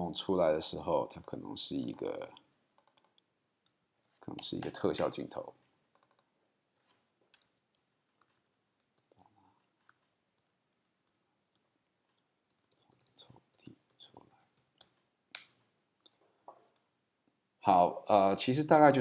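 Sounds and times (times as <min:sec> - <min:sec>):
mouse and keyboard clicks: 0:09.8 - 0:15.6.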